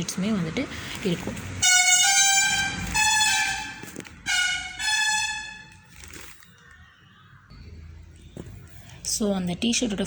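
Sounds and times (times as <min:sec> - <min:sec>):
loud horn blasts: 0:01.6 - 0:05.8.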